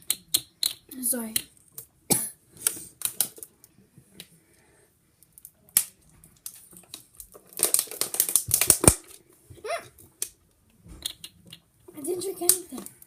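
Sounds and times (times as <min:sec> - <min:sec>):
plastic bottle crinkling: 0:06.4 - 0:09.2.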